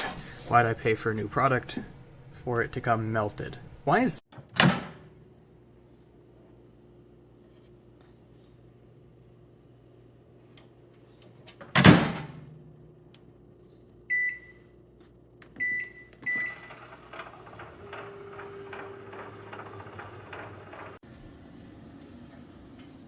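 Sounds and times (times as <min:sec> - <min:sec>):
microwave oven humming: 0:11.8 - 0:23.0
microwave keypad beeps: 0:14.1 - 0:14.7, 0:15.6 - 0:16.8.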